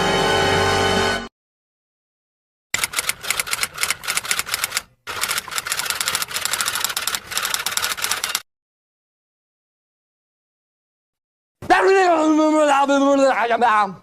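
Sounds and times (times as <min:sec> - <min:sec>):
rapid keyboard typing: 0:02.8 - 0:08.4.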